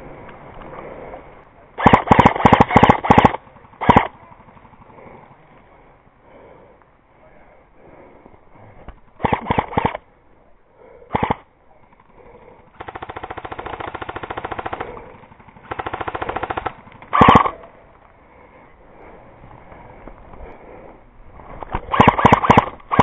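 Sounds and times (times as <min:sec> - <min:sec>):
loud sharp crack: 0:01.8 - 0:04.1, 0:21.9 - 0:23.0
airsoft guns firing bursts: 0:01.8 - 0:05.4, 0:09.0 - 0:10.0, 0:11.1 - 0:17.8, 0:21.7 - 0:23.0.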